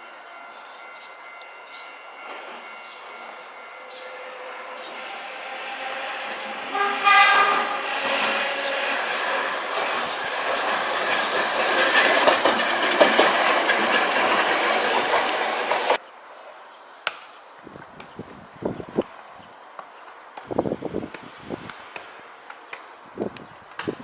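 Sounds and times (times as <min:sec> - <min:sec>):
tram wheels clattering over rails: 0:02.2 - 0:16.0.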